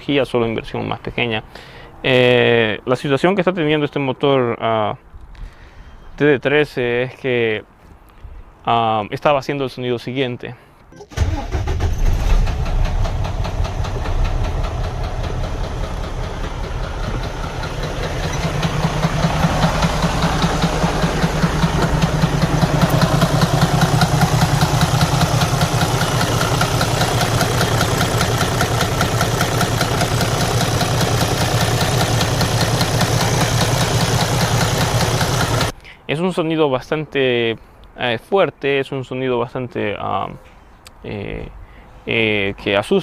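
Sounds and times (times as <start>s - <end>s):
diesel engine knocking: 11.2s - 35.7s.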